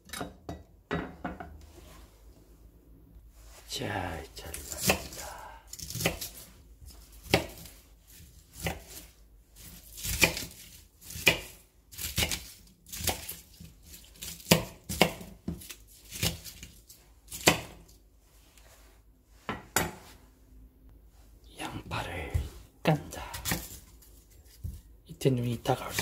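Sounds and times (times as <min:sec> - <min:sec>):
knife chopping cabbage: 0:04.4 - 0:18.0, 0:22.2 - 0:26.0.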